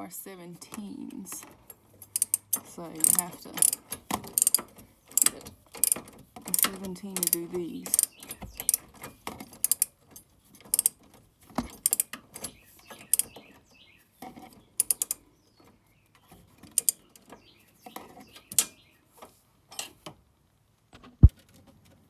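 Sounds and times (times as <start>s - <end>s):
socket ratchet clicking: 1.4s - 10.0s, 10.7s - 11.0s, 11.7s - 12.2s, 14.8s - 15.2s, 16.7s - 17.1s.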